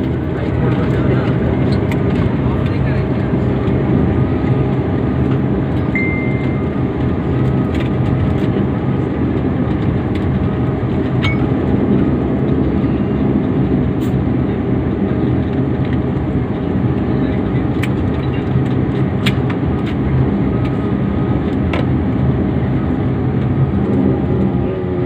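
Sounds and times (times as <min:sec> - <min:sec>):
airliner cabin engine rumble: 0:00.0 - 0:25.0
short high tone: 0:06.0 - 0:06.7.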